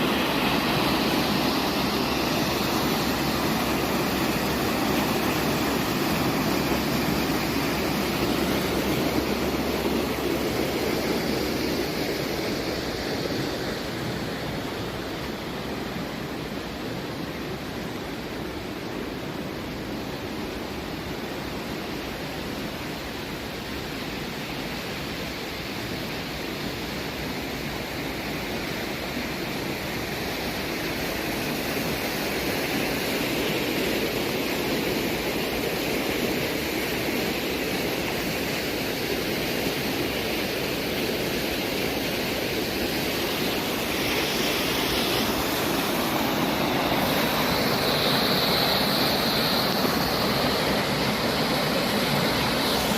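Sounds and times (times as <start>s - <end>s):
breaking water hiss: 0.0s - 15.3s, 29.9s - 52.9s
waves washing ashore: 0.0s - 52.9s.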